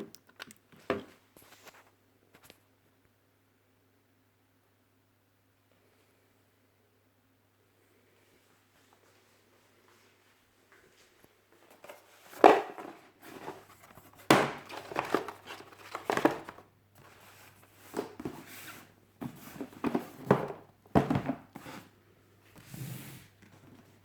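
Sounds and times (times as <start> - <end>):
packaging crinkling and rustling: 11.8 - 18.4.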